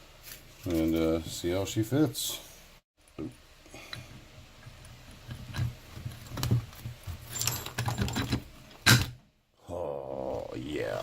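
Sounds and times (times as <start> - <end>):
steel parts clinking and knocking: 5.2 - 9.2.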